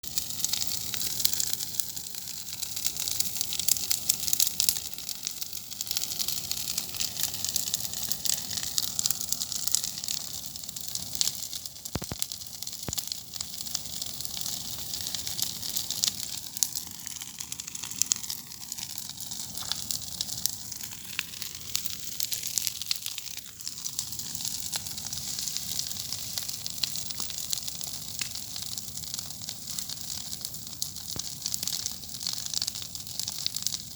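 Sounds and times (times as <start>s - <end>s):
bonfire crackling and hissing: 0.0s - 33.9s
sharp pop from fire: 11.9s - 13.1s.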